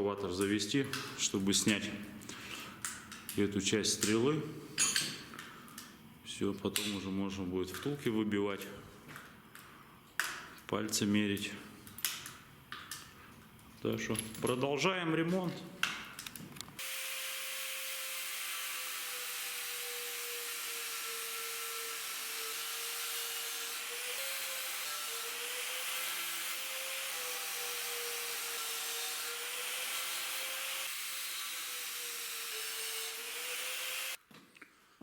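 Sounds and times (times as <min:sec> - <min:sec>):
power tool grinding metal: 0:16.8 - 0:34.2.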